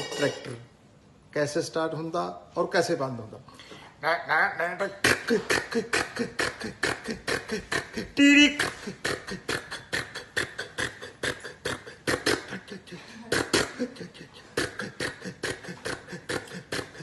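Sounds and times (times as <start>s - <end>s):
man imitating tractor engine: 4.1s - 17.0s.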